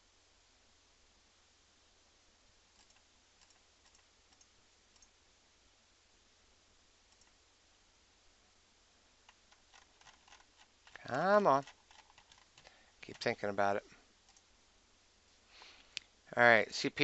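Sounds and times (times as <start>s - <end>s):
faint computer mouse clicks: 2.8s - 5.2s, 7.1s - 7.4s, 14.3s - 14.5s.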